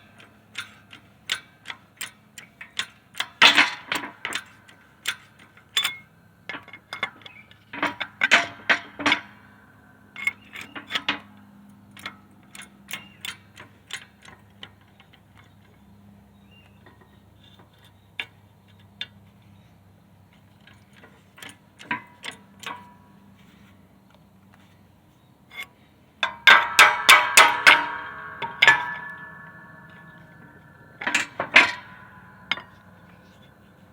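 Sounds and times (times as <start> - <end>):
metal tools ticking and tapping: 0.1 - 9.2, 11.9 - 15.8, 20.4 - 23.0, 25.5 - 33.9
ringing metallic clinks: 25.5 - 33.9.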